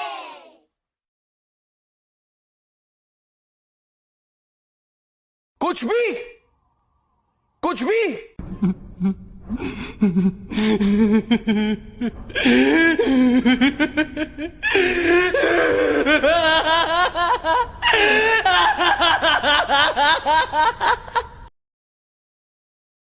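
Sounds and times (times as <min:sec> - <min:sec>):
person laughing hard: 0:08.5 - 0:21.5.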